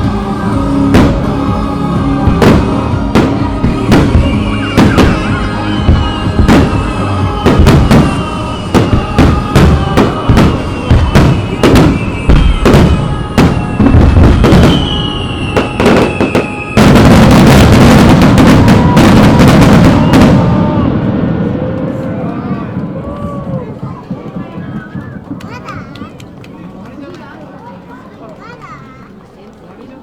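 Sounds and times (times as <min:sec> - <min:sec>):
music: 0:00.0 - 0:20.9
fireworks bursting: 0:00.0 - 0:22.0.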